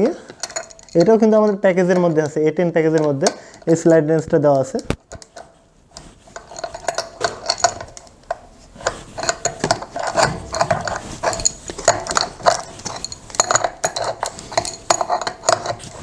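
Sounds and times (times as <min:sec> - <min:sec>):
wrench clicking and scraping on nut: 0:06.4 - 0:16.0.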